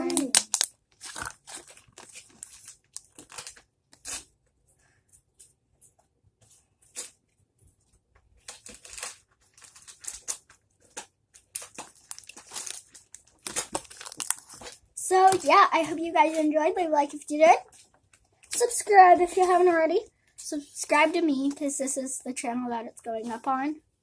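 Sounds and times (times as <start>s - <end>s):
plastic packaging crinkling and tearing: 0.0s - 4.4s, 8.4s - 15.6s.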